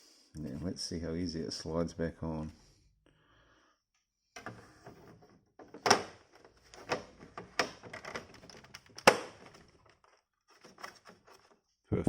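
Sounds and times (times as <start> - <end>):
plastic scraping: 4.4 - 11.6
plastic cover clicking into clips: 5.8 - 11.5.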